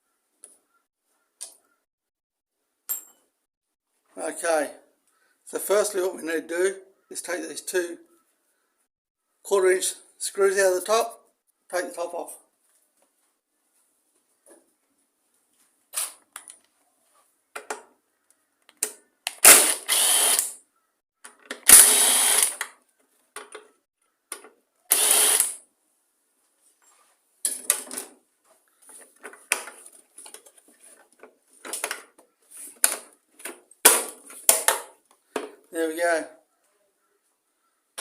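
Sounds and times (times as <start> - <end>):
ratchet wrench bursts: 19.4 - 20.6, 21.7 - 22.6, 24.9 - 25.6.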